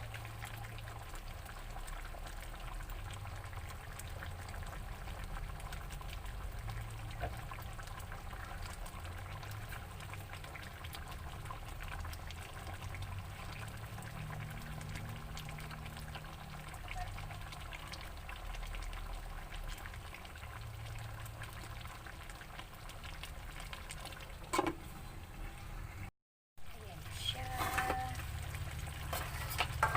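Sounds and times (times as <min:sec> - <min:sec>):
sauce bubbling in a pot: 0:00.0 - 0:25.9, 0:26.7 - 0:29.9.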